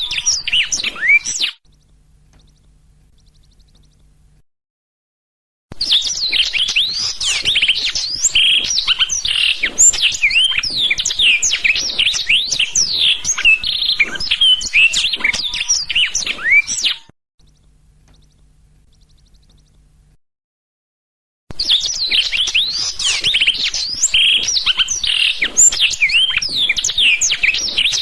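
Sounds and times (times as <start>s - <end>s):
canary singing: 0.0s - 4.4s, 5.8s - 20.2s, 21.6s - 28.0s.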